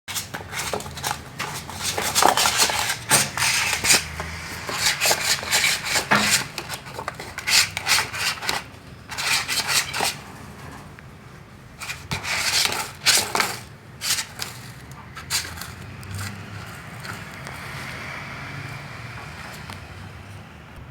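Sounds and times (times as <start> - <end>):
kitten scratching with claws: 0.1 - 10.9, 11.8 - 18.0.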